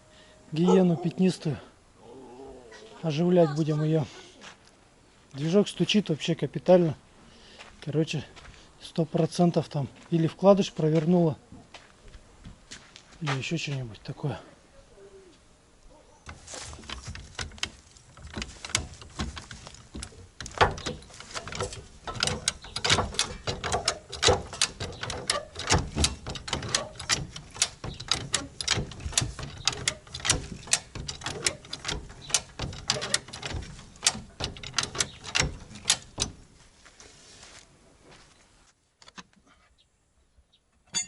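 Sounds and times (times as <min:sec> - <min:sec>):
sharp knocks and clanks: 0:16.3 - 0:36.5.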